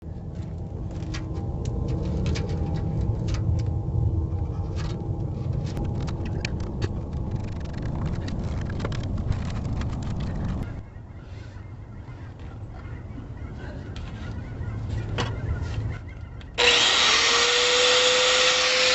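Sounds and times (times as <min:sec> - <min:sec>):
engine rumbling: 0:00.0 - 0:11.8
sharp ticks and pops: 0:05.8 - 0:10.6.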